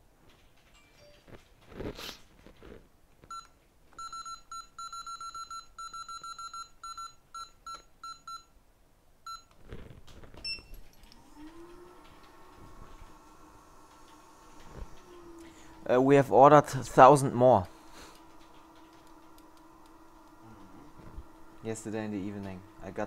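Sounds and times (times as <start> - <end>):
rising machine whine: 11.1 - 23.0.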